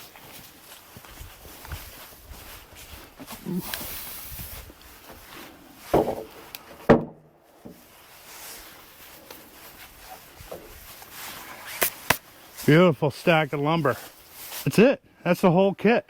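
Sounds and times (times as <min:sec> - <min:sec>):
scuffling footsteps: 0:00.0 - 0:06.8, 0:07.6 - 0:14.7
wood knocking on wood: 0:05.9 - 0:07.8.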